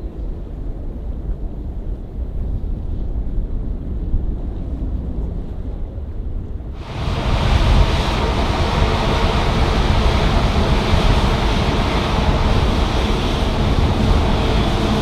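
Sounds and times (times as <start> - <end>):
jet engines roaring: 6.8 - 15.0.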